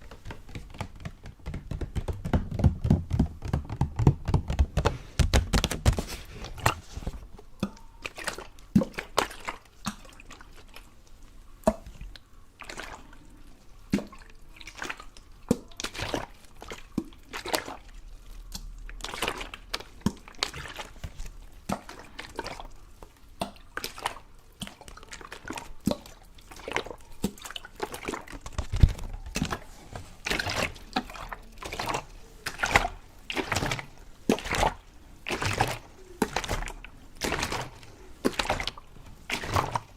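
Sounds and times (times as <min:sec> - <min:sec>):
water dripping and splashing: 0:13.9 - 0:29.6, 0:30.2 - 0:39.9.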